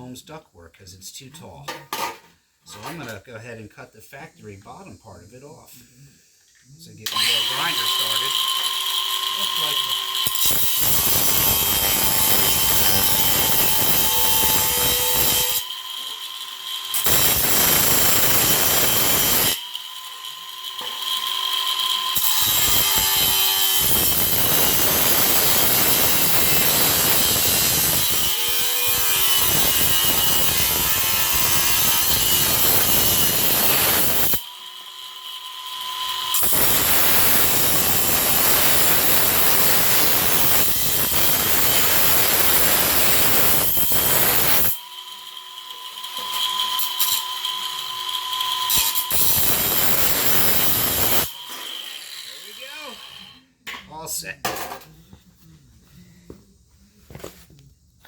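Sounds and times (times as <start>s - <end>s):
grinder motor whine: 7.1s - 53.3s
grinder cutting sheet metal: 7.1s - 53.5s.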